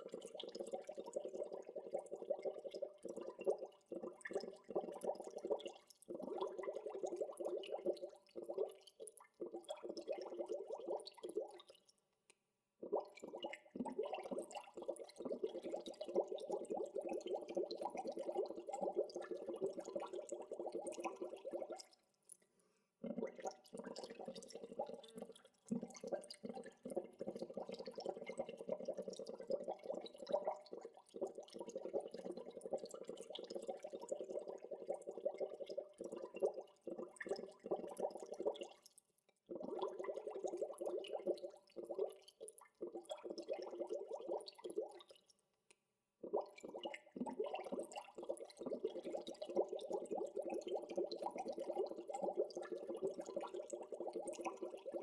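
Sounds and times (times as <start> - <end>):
water bubbling: 23.0 - 38.8, 46.2 - 55.0.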